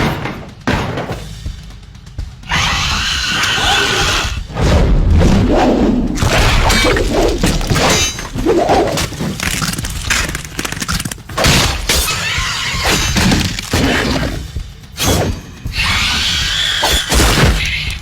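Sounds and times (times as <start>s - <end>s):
crashes and thuds: 0.0s - 1.7s, 4.5s - 15.8s.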